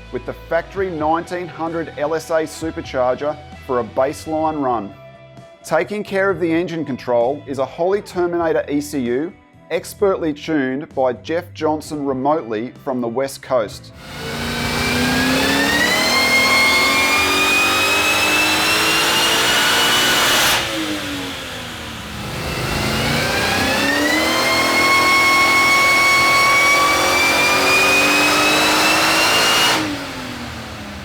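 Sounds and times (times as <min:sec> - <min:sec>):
engine revving on dyno: 0:14.0 - 0:31.0
supercharger whine: 0:14.0 - 0:31.0.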